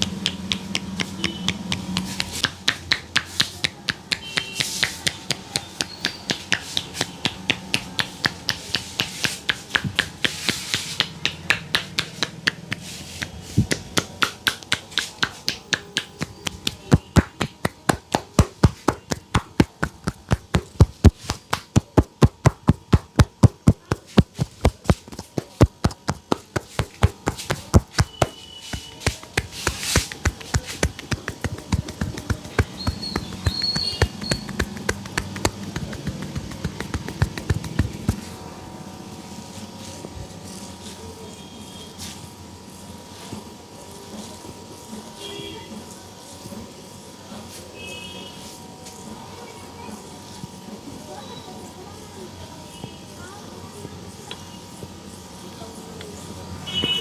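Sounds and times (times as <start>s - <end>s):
hands slapping head in massage: 0.0s - 38.4s.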